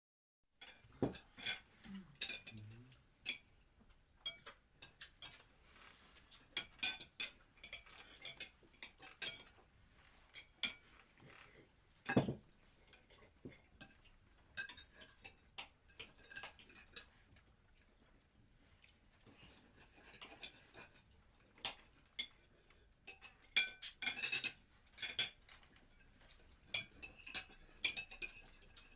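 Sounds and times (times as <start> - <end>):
cutlery clinking on plates: 0.6 - 3.5, 4.2 - 9.7, 10.3 - 17.4, 19.2 - 28.9.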